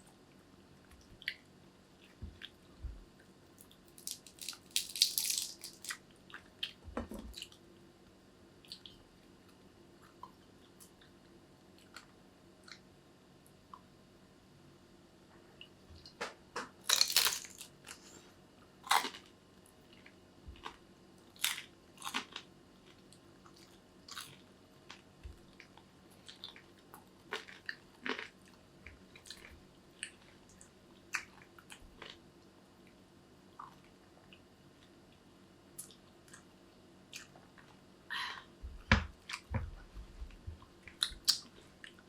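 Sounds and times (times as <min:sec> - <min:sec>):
person chewing crunchy food: 0:03.6 - 0:07.6, 0:16.9 - 0:18.2, 0:18.8 - 0:20.8, 0:21.4 - 0:30.3.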